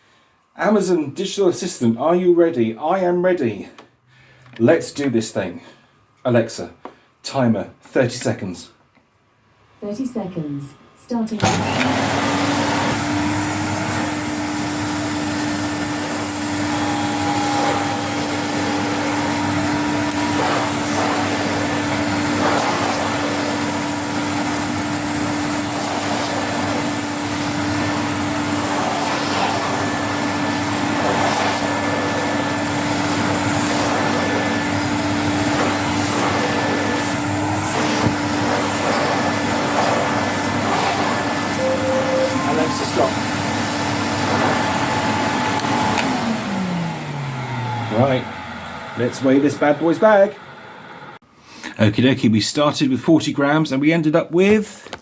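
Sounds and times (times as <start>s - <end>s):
vacuum cleaner running: 11.4s - 51.2s.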